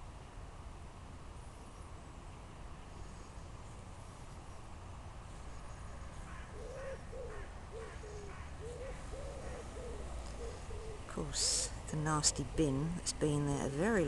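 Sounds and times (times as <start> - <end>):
pigeon cooing: 6.3 - 12.8.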